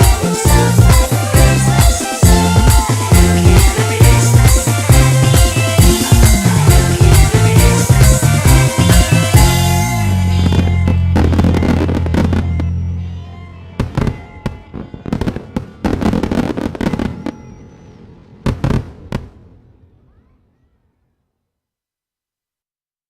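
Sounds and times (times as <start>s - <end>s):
pop song chord: 0.0s - 14.9s
fireworks bangs and crackles: 0.0s - 20.6s
firework whistles: 7.6s - 18.8s.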